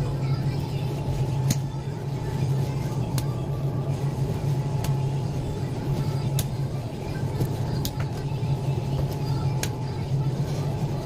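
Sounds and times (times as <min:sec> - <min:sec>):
low motor hum: 0:00.0 - 0:11.0.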